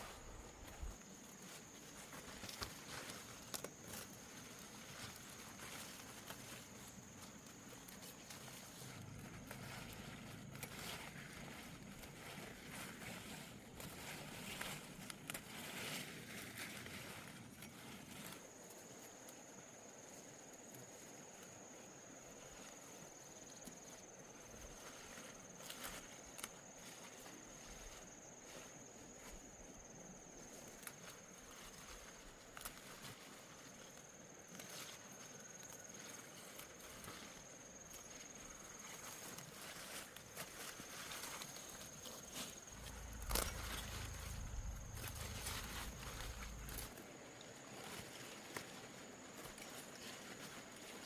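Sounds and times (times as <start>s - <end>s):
light rustling: 39.1s - 47.0s
high-pitched insect trill: 40.6s - 47.0s.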